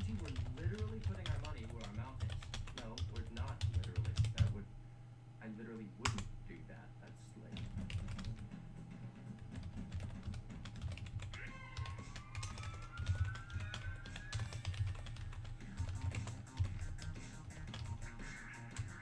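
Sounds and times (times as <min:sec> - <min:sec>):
keyboard typing clicks: 0:00.0 - 0:04.6, 0:09.5 - 0:18.0
low background music: 0:07.4 - 0:19.0.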